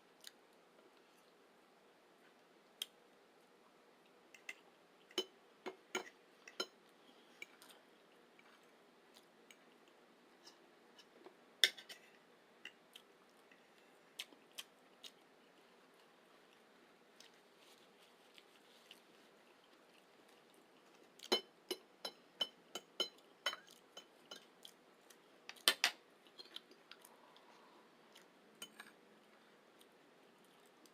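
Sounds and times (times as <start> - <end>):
chewing with clicks and smacks: 12.7 - 17.4, 22.8 - 30.9.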